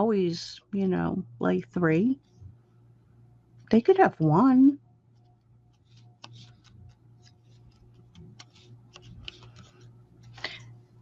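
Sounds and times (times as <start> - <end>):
low electrical hum: 0.0 - 11.0
paper and cardstock handled: 5.7 - 10.6.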